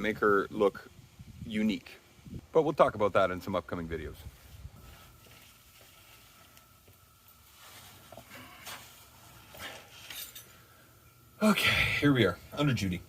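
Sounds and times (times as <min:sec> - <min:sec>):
faint rustles: 0:04.2 - 0:11.0.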